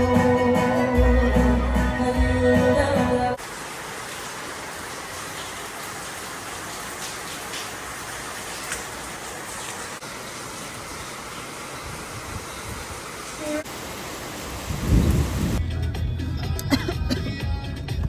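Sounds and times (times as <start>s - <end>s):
louder raindrops: 3.4s - 15.6s
rain falling: 3.4s - 15.6s.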